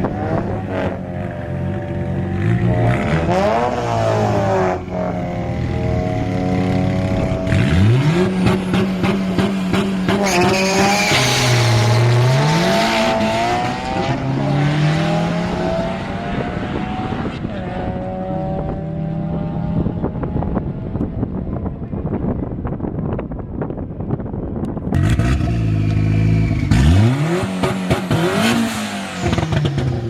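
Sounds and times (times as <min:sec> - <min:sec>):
car engine revving: 0:00.0 - 0:20.6, 0:24.9 - 0:30.0
tires squealing: 0:10.1 - 0:12.2.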